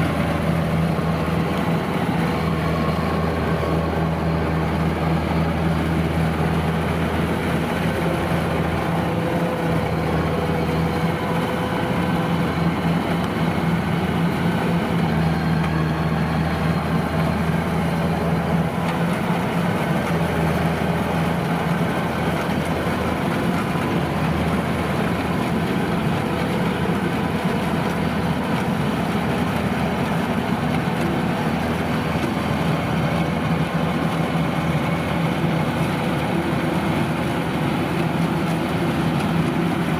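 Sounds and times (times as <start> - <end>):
diesel engine droning: 0.0 - 39.9.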